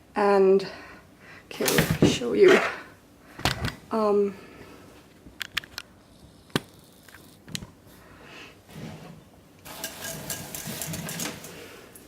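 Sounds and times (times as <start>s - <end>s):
crackling and rattling of handling: 9.6s - 12.0s.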